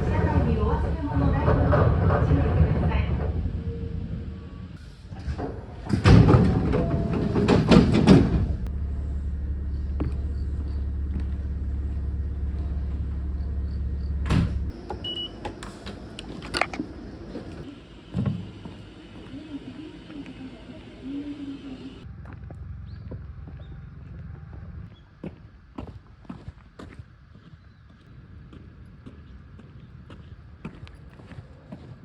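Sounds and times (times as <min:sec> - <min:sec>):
doors clattering open: 0:00.0 - 0:08.7, 0:12.4 - 0:18.7
steady low hum: 0:08.4 - 0:32.0.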